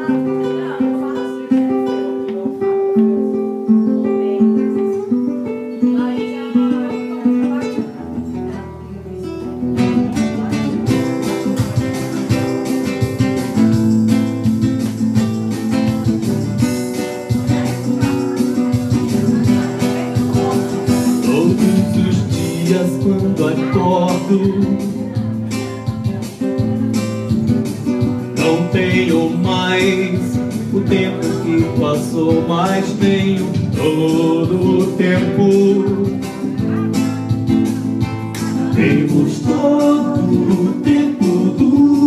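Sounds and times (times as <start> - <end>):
acoustic guitar playing: 0.0 - 42.0
bass line: 9.4 - 42.0.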